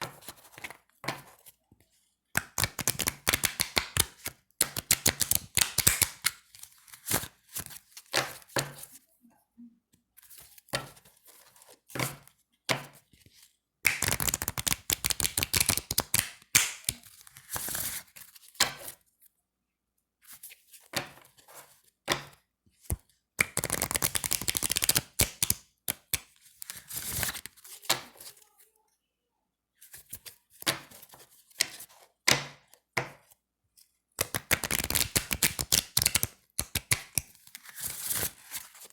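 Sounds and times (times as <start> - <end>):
card snaps and taps: 2.4 - 6.4, 13.9 - 17.8, 22.1 - 28.3, 34.2 - 37.7
playing cards riffling: 23.4 - 27.6, 34.2 - 38.8.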